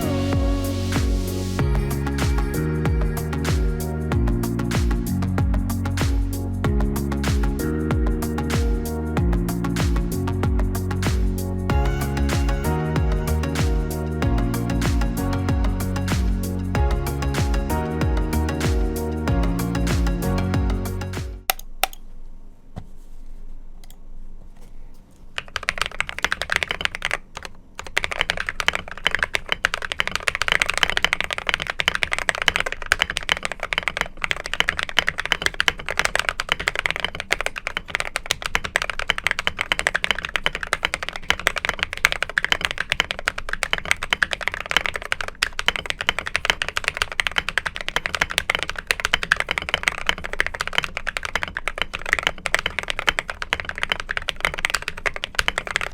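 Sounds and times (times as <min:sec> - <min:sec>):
fast mechanical keyboard typing: 0:25.4 - 0:55.9.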